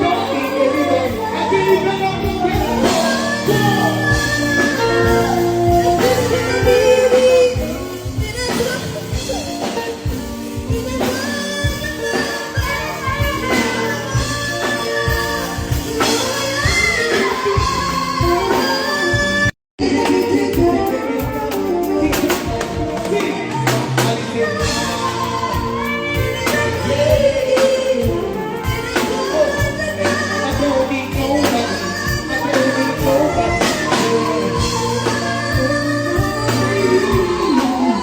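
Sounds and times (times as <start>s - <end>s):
band playing with drum beat: 0.0s - 38.0s
person singing: 0.0s - 38.0s.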